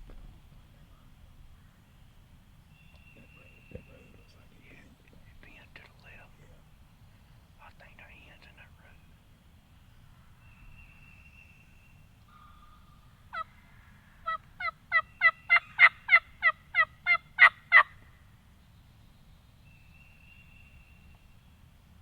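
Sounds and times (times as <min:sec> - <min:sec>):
wild turkey yelping: 0:12.3 - 0:18.0.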